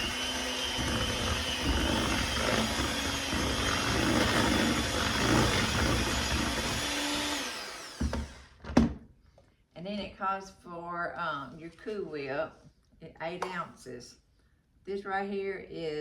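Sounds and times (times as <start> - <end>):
electric mixer running: 0.0 - 8.5.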